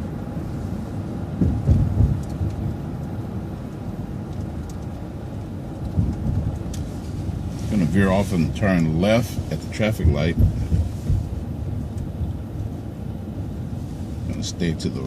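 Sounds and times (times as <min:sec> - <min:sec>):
bus engine rumble: 0:00.0 - 0:15.0
road noise: 0:00.0 - 0:15.0
low thumps: 0:01.3 - 0:02.8, 0:09.4 - 0:12.4.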